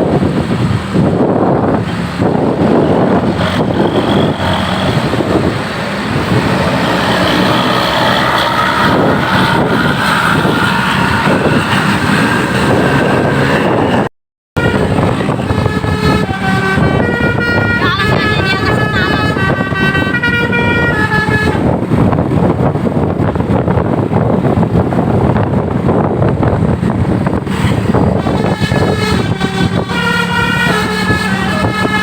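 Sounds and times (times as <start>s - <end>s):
bus engine running: 0.0s - 32.0s
musical bus horn: 2.6s - 5.6s, 13.0s - 22.1s, 27.5s - 32.0s.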